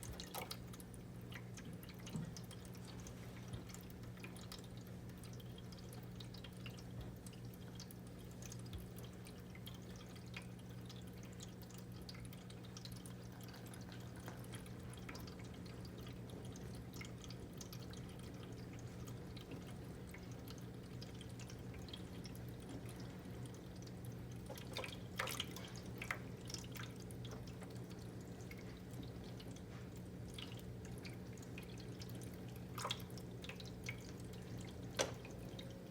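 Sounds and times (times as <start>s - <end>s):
low steady hum: 0.0s - 35.9s
water dripping and trickling: 0.0s - 35.9s
water splashes: 20.1s - 35.9s.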